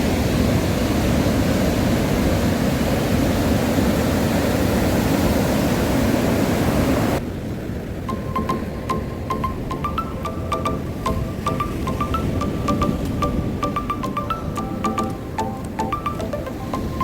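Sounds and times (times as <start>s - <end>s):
waves breaking on shore: 0.0s - 17.0s
background music held notes: 8.1s - 17.0s.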